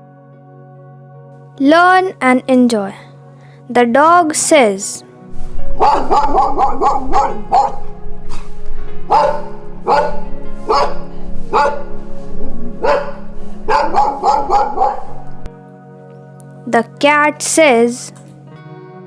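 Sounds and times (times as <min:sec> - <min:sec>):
background music: 0:00.0 - 0:19.0
dog barking: 0:05.8 - 0:08.5, 0:09.1 - 0:11.9, 0:12.8 - 0:15.2.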